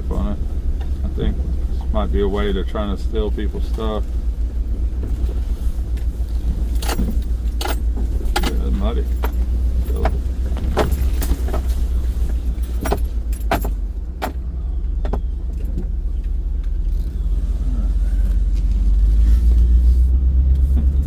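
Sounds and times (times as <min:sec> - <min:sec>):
truck engine and road rumble: 0:00.0 - 0:21.0
clicks and rattles: 0:05.0 - 0:14.4.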